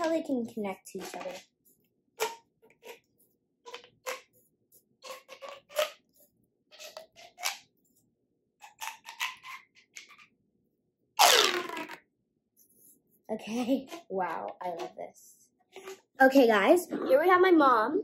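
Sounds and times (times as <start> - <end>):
plastic pop tubes zipping: 2.2 - 3.0, 3.7 - 4.4, 5.0 - 6.1, 6.8 - 7.7, 8.6 - 10.3, 11.2 - 12.0.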